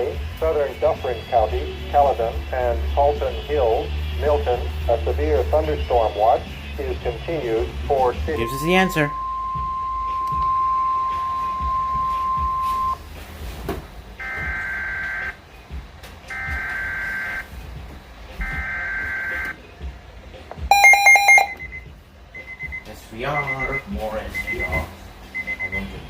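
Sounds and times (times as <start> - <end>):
sharp electronic beeps: 8.4 - 13.0, 20.7 - 21.8, 22.4 - 23.8
steady alarm tone: 8.4 - 13.0, 14.2 - 15.4, 16.3 - 17.5, 18.4 - 19.5, 20.7 - 23.8.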